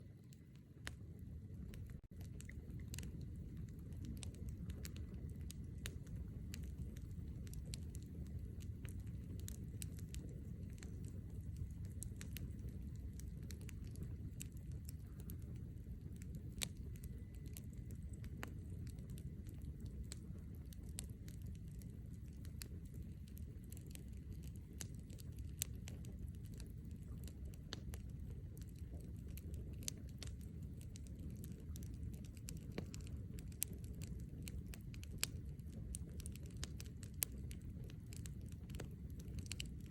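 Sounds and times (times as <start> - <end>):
steady low rumble: 0.0 - 39.9
campfire pops and snaps: 1.6 - 39.9.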